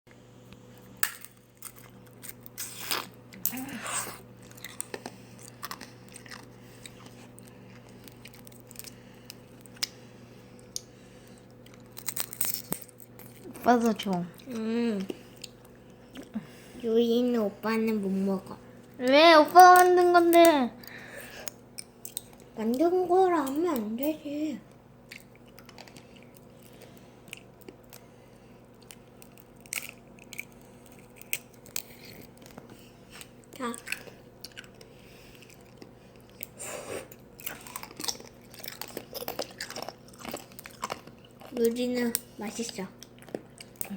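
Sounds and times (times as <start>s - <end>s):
ice crunching while chewed: 1.0s - 16.4s, 25.1s - 28.1s, 28.7s - 43.9s
ice crunching between teeth: 33.2s - 43.9s.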